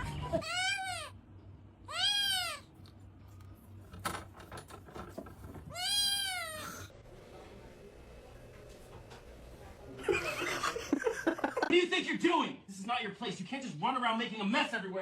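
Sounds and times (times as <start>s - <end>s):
cat meowing: 0.4s - 1.1s, 1.9s - 2.7s, 5.7s - 6.9s.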